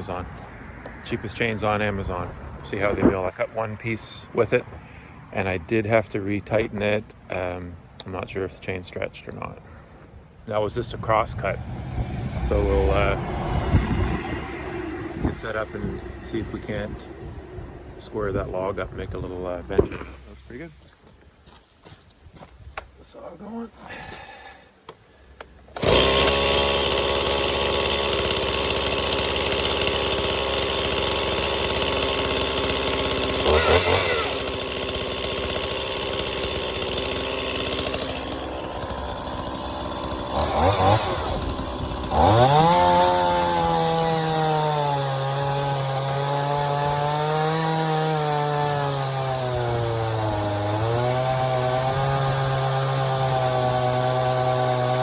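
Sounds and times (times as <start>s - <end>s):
chainsaw cutting a log: 12.4s - 13.2s, 25.7s - 55.0s.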